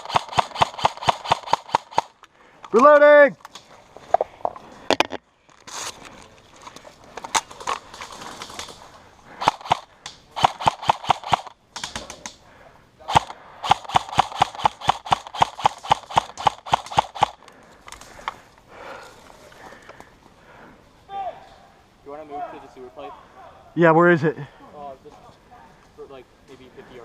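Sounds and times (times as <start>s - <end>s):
airsoft gun shots: 0.0s - 2.1s, 9.4s - 9.8s, 10.4s - 12.0s, 13.1s - 17.4s.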